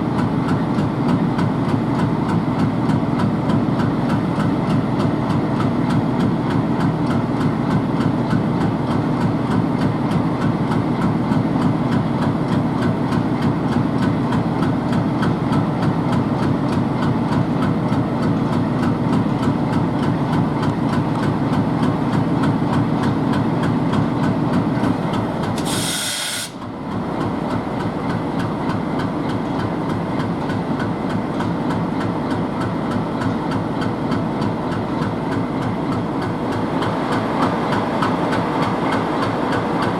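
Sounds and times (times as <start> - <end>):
diesel locomotive engine idling: 0.0 - 39.9
short hiss: 25.6 - 26.6.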